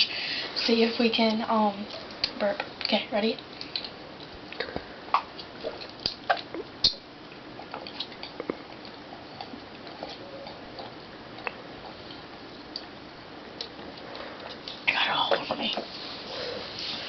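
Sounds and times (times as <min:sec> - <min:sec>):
steady low hiss: 0:00.0 - 0:17.0
person drinking and swallowing: 0:04.5 - 0:06.8.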